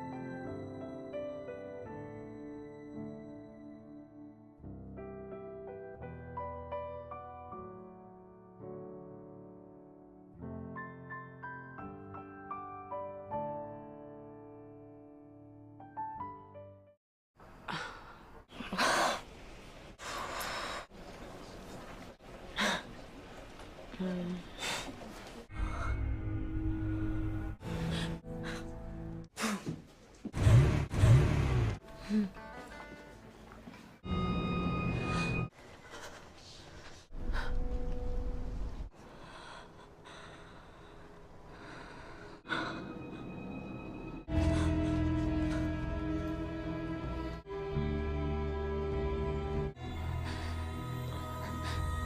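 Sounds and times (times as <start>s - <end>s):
piano music: 0.0s - 17.0s, 31.8s - 35.5s, 42.5s - 50.5s
heavy breathing: 38.9s - 43.6s, 44.3s - 46.4s, 50.1s - 52.0s.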